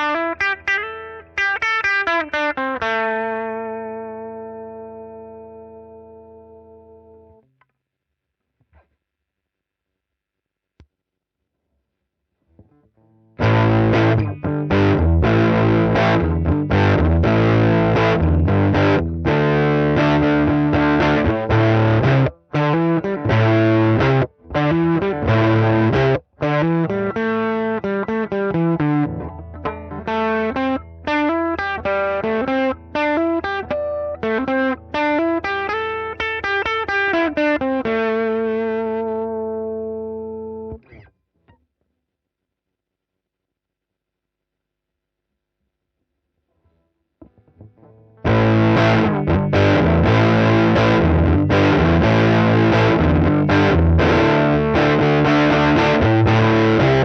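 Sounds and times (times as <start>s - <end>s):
distorted electric guitar: 0.0s - 7.4s, 13.4s - 41.1s, 47.2s - 57.0s.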